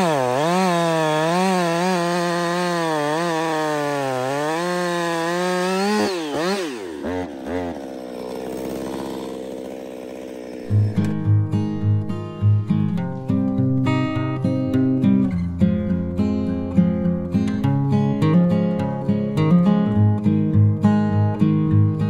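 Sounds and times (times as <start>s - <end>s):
chainsaw revving and idling: 0.0s - 12.7s.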